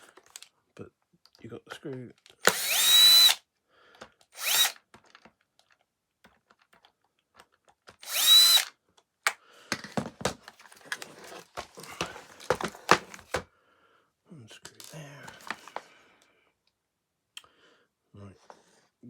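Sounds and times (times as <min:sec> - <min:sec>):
plastic parts clicking and knocking: 0:02.1 - 0:09.1, 0:09.7 - 0:13.4
electric screwdriver whining: 0:02.4 - 0:03.4, 0:04.4 - 0:04.8, 0:08.0 - 0:08.7.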